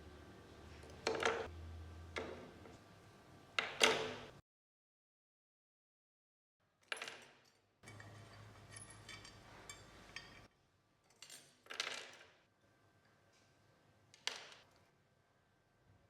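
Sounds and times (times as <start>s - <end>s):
metal parts clinking: 6.8s - 12.3s.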